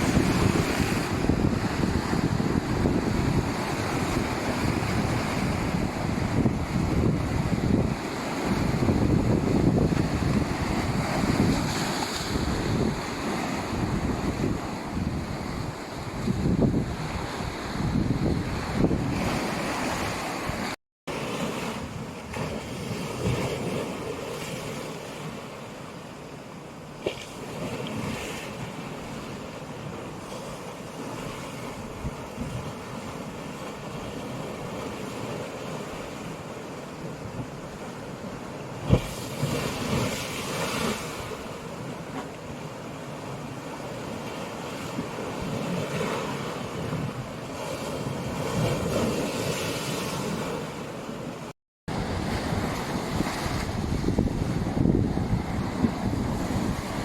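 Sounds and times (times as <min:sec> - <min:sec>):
wind buffeting microphone: 0:00.0 - 0:20.7, 0:51.9 - 0:57.0
waves washing over rocky shore: 0:00.0 - 0:57.0.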